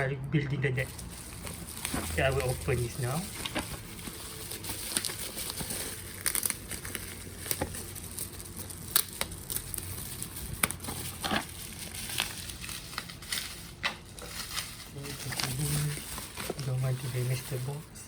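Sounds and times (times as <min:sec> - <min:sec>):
plastic wrapping crinkling and tearing: 0:00.4 - 0:18.0.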